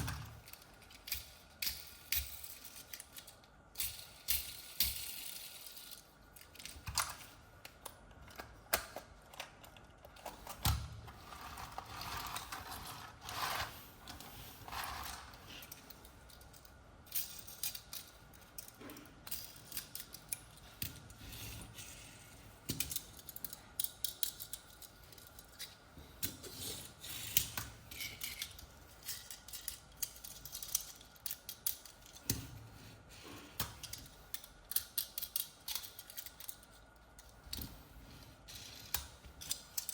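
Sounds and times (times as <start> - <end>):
toys clicking and snapping: 33.6 - 37.7.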